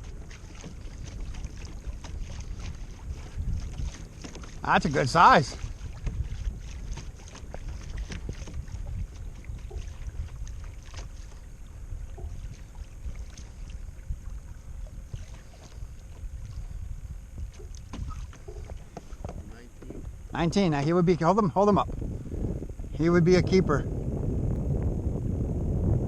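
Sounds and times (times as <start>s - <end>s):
water lapping against hull: 0.0s - 23.7s
wind rumbling on microphone: 0.0s - 26.0s
small knocks: 17.5s - 20.2s.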